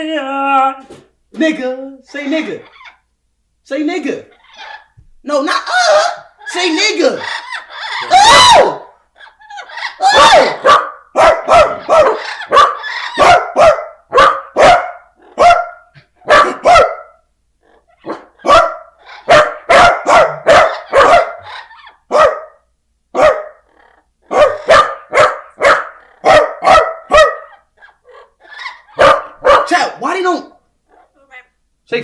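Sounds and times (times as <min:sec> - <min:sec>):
dog barking rapidly: 0:05.5 - 0:17.3, 0:18.0 - 0:23.7, 0:24.3 - 0:30.1.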